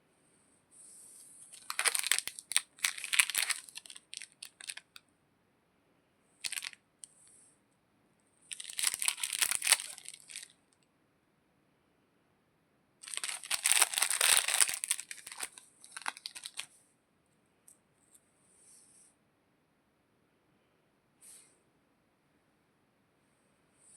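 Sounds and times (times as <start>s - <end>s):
candy wrapper crinkling: 1.5s - 5.0s, 6.4s - 6.8s, 8.5s - 10.6s, 13.0s - 16.7s.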